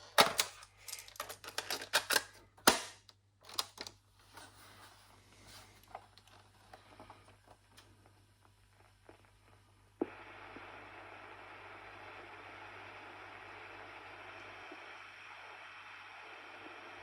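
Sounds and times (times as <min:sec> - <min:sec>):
cassette tape being loaded: 0:00.0 - 0:04.0, 0:10.0 - 0:17.0.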